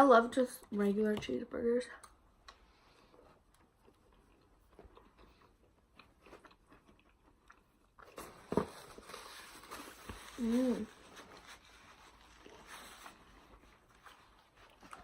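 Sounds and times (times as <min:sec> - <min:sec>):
chewing with wet mouth smacks: 0:03.4 - 0:08.1.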